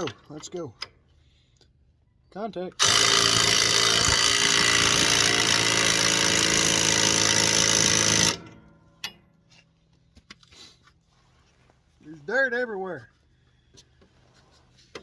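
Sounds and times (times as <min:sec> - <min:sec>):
impact wrench hammering: 0:02.8 - 0:09.2.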